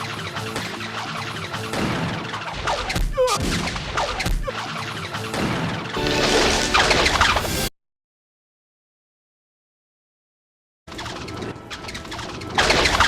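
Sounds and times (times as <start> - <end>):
cartoon music: 6.0 - 7.6.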